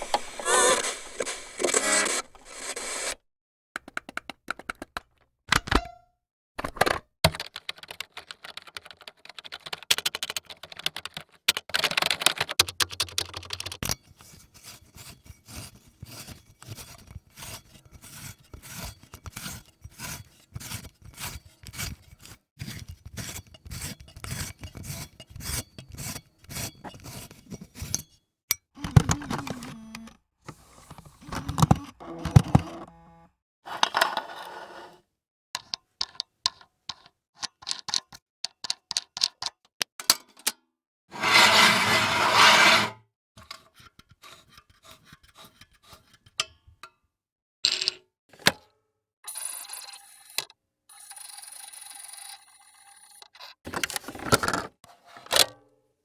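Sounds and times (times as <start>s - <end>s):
mechanical scraping and clicking: 0.0s - 3.2s.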